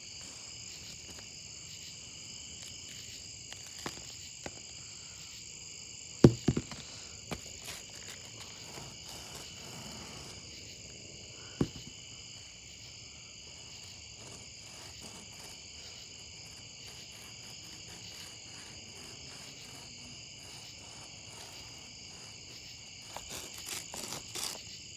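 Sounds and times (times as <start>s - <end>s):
insects chirring: 0.0s - 24.9s
sharp knocks: 6.2s - 6.8s.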